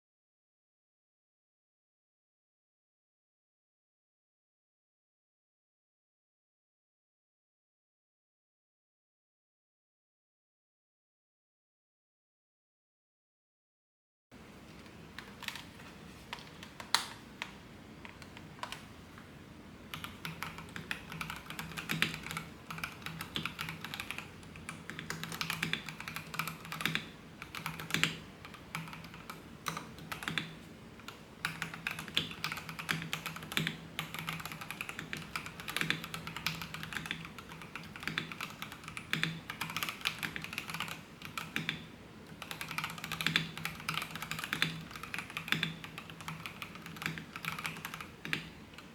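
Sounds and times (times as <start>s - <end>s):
mechanical keyboard typing: 15.2s - 17.5s, 19.9s - 48.9s.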